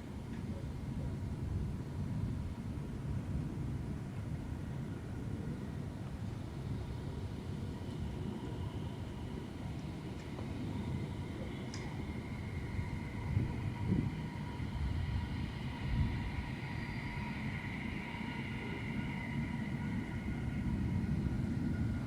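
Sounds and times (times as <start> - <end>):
jet engine rumble: 0.0 - 22.0
jet engine whine falling in pitch: 4.8 - 22.0.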